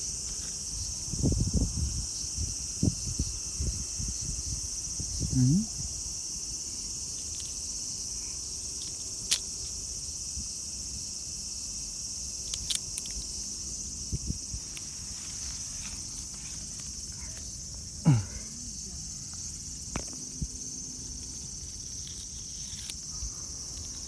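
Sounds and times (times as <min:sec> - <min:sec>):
insects chorus: 0:00.0 - 0:24.0
small ticks: 0:06.6 - 0:14.9, 0:19.2 - 0:24.0.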